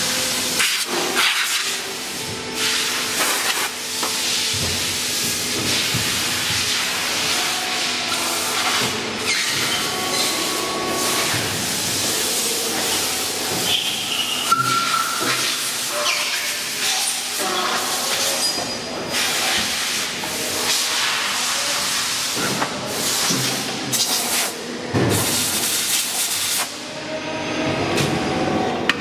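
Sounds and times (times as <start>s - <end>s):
steady machine hiss: 0.0s - 26.8s.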